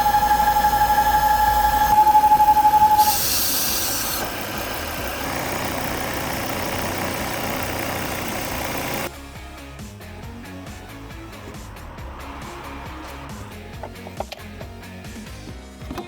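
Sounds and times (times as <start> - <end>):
high-pitched whistle: 0.0 - 4.2
car engine idling: 0.0 - 15.4.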